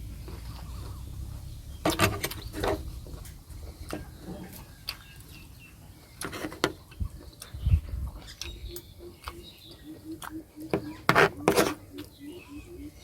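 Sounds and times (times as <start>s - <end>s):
person chewing with mouth smacks: 3.6s - 5.4s, 6.1s - 10.5s.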